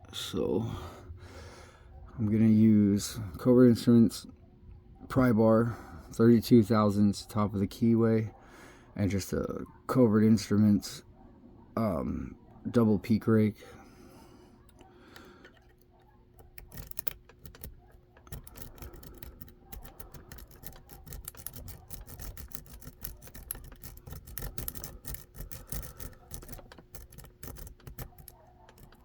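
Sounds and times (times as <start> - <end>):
lock pick raking pins: 14.6 - 29.0.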